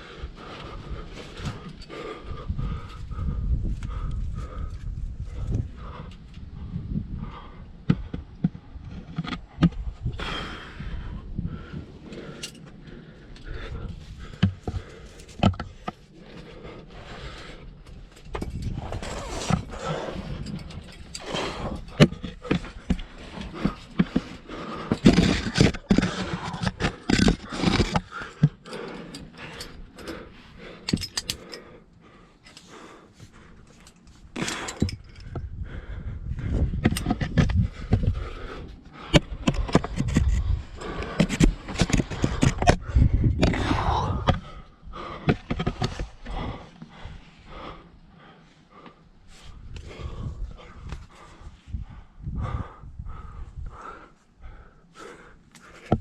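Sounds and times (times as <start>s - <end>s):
microphone handling rumble: 0.6s - 12.3s, 34.4s - 47.0s, 49.5s - 53.8s
climbing hardware clinking: 12.0s - 35.4s
shoes scraping against rock: 18.7s - 20.2s.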